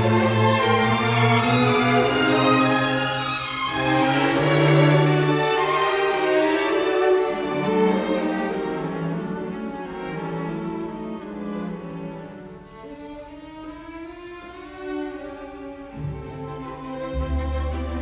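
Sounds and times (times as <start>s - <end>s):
bowed strings playing slow notes: 15.9s - 18.0s.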